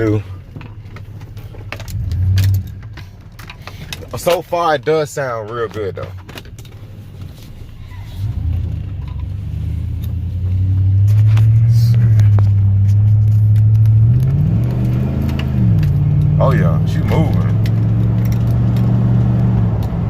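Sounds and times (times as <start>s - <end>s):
truck engine accelerating: 7.6s - 20.0s.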